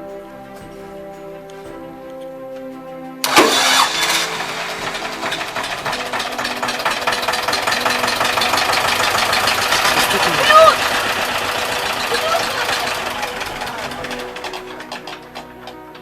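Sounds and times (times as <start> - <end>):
background music: 0.0 - 16.0
tractor diesel engine clattering: 3.2 - 16.0.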